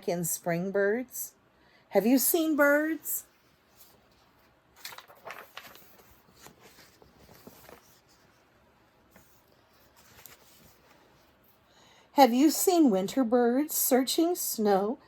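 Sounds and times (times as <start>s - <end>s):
book pages rustling and turning: 3.3s - 11.6s.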